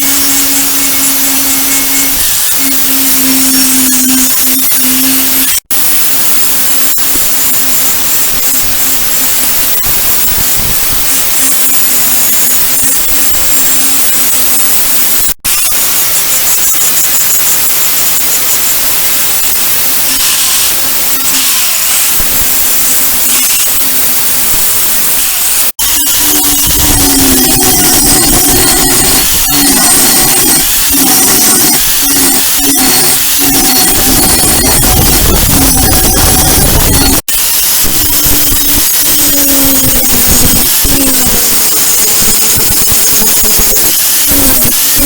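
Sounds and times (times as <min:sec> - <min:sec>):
power tool motor hum: 0:00.0 - 0:45.0
abrasive hiss: 0:17.2 - 0:45.0.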